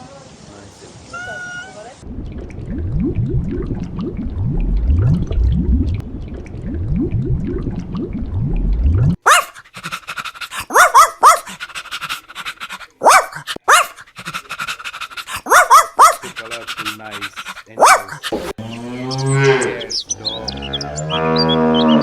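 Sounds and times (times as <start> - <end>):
dog low rhythmic sounds: 9.0 - 18.6.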